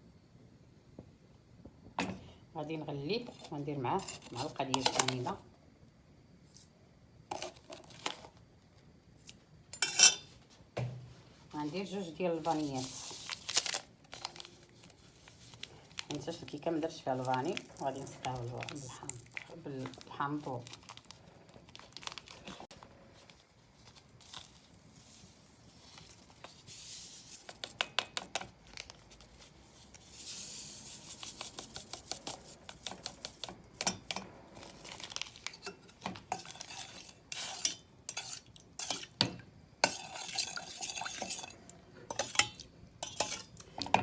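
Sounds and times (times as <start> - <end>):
spoon scraping in saucepan: 3.2 - 5.2, 9.7 - 10.3, 35.4 - 39.2, 39.8 - 43.8.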